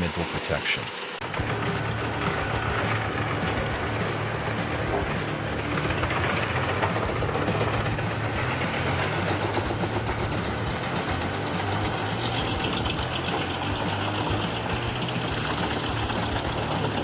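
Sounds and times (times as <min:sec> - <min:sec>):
wood chipper engine running: 0:01.2 - 0:17.0.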